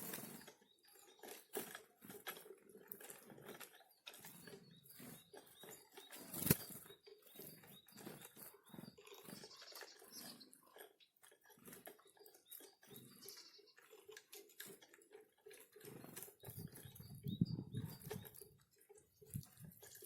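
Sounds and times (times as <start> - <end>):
faint high bird chirps: 3.8 - 10.6, 12.0 - 13.8, 16.4 - 18.6
wings fluttering: 6.1 - 6.9.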